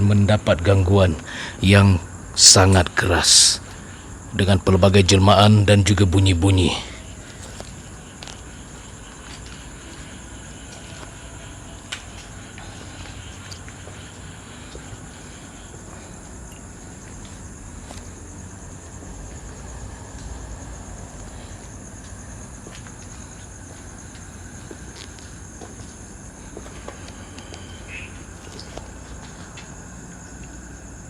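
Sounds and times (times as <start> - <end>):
crickets chirring: 0.0 - 31.0.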